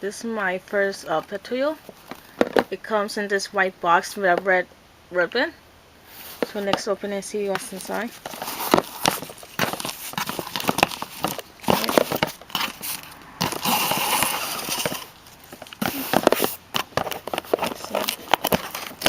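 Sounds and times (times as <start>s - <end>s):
packaging crinkling and rustling: 7.5s - 19.0s.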